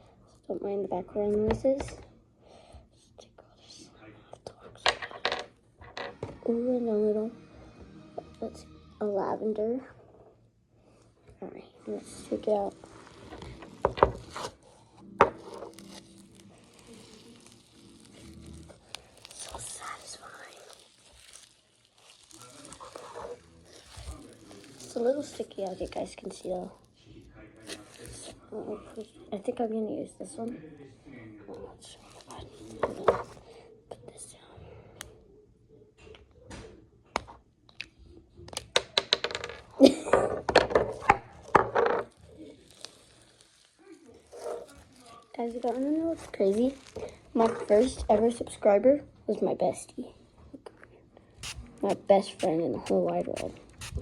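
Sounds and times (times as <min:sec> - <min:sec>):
packaging crinkling: 0:15.4 - 0:25.6, 0:42.2 - 0:47.3
squishy slime bursts: 0:51.4 - 0:54.0.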